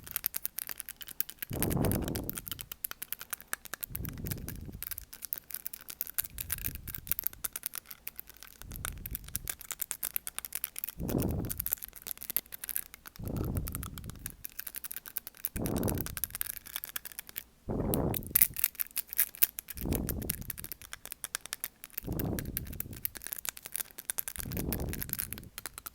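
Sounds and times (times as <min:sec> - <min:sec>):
crackle of fine clicks: 0:00.0 - 0:25.9
wind noise on microphone: 0:01.5 - 0:02.8, 0:03.8 - 0:05.1, 0:06.2 - 0:07.6, 0:08.6 - 0:09.7, 0:11.0 - 0:11.8, 0:13.2 - 0:14.5, 0:15.6 - 0:16.6, 0:17.7 - 0:18.7, 0:19.8 - 0:20.9, 0:22.0 - 0:23.2, 0:24.4 - 0:25.9.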